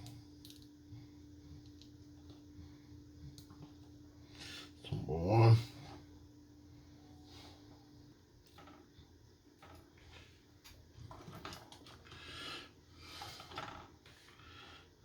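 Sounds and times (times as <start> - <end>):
soft breaths: 12.0 - 15.0.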